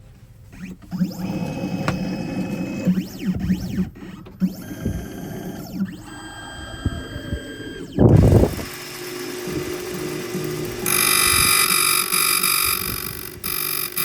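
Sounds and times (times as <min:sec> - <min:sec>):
clicks: 0:00.6 - 0:02.2
key-cutting machine motor whining: 0:00.6 - 0:14.0.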